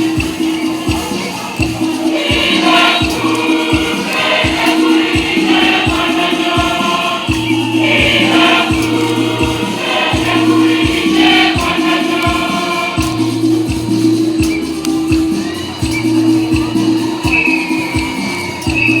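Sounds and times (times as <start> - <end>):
choir singing a hymn: 0.0 - 19.0
steady drum beat: 0.0 - 19.0.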